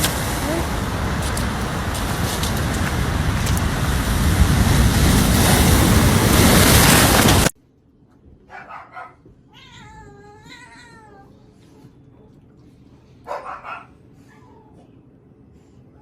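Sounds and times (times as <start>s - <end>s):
loud rushing noise: 0.0s - 7.6s.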